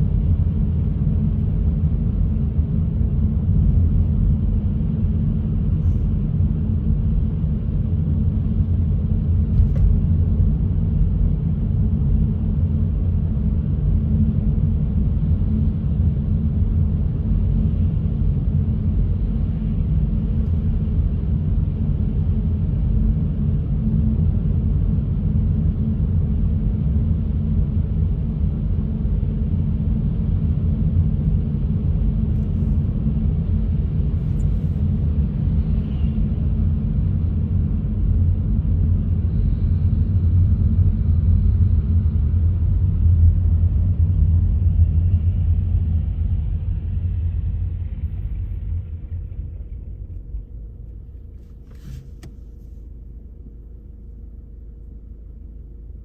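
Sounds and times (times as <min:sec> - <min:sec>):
car driving rumble: 0:42.4 - 0:56.0.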